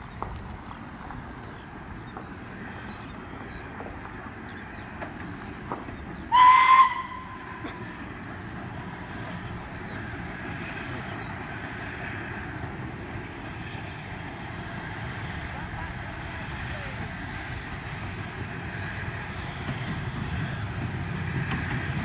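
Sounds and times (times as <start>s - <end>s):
steam locomotive whistle: 6.3s - 7.5s.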